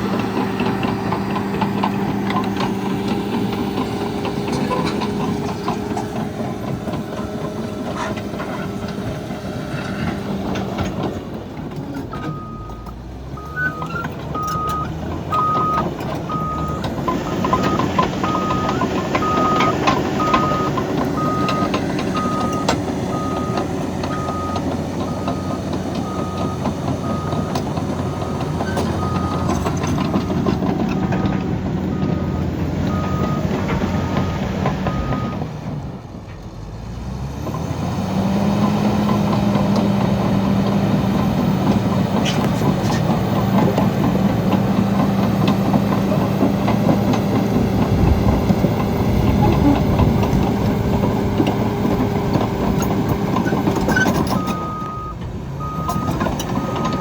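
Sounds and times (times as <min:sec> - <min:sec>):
bulldozer diesel engine: 0:00.0 - 0:57.0
clanking tracks: 0:00.0 - 0:57.0
backup alarm beeping: 0:13.4 - 0:35.4, 0:54.3 - 0:57.0.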